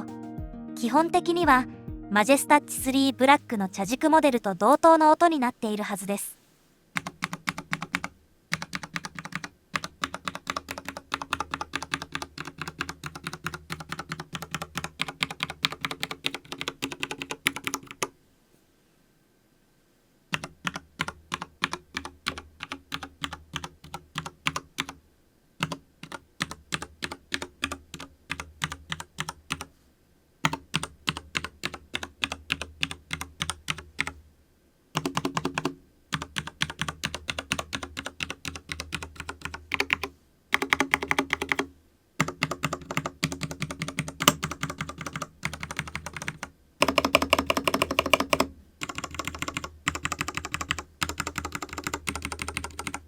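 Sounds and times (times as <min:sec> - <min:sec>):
mechanical keyboard typing: 0:07.0 - 0:18.1, 0:20.3 - 0:25.0, 0:25.6 - 0:29.7, 0:30.4 - 0:34.2, 0:35.0 - 0:53.0.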